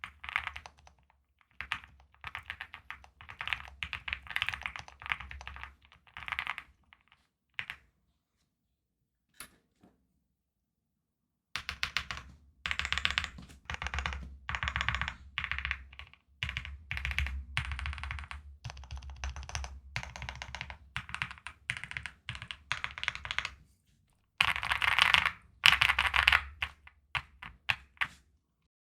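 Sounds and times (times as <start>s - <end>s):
mechanical keyboard typing: 0.0s - 6.8s, 11.6s - 23.6s, 24.4s - 28.0s.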